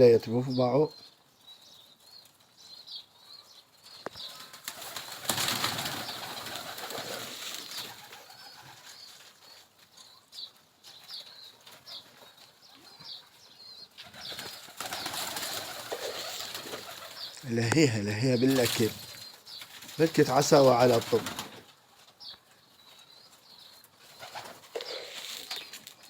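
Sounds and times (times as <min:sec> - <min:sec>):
wing flapping: 0:04.2 - 0:09.4, 0:14.0 - 0:17.3, 0:18.5 - 0:21.7, 0:24.1 - 0:26.0.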